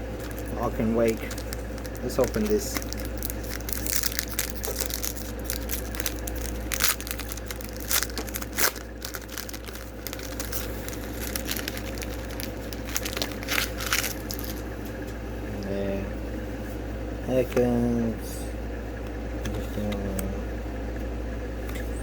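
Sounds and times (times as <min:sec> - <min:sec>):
steady low hum: 0:00.0 - 0:22.0
foil wrapper tearing and crinkling: 0:00.2 - 0:14.7.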